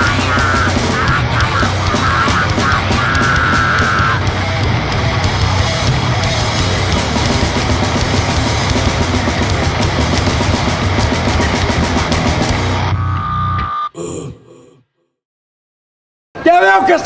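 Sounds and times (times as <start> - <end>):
fast dense drumming: 0.0 - 12.9
distorted guitar and bass: 0.0 - 13.9.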